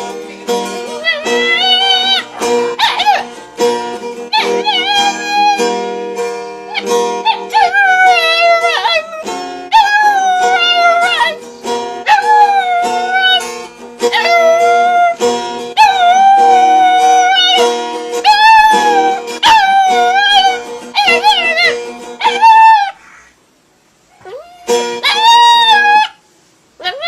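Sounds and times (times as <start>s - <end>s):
music: 0.0s - 22.8s, 24.6s - 26.3s
dog howling: 1.0s - 3.4s, 4.3s - 5.7s, 6.7s - 11.4s, 12.0s - 13.4s, 14.1s - 15.2s, 15.8s - 17.6s, 18.2s - 23.0s, 24.2s - 26.2s.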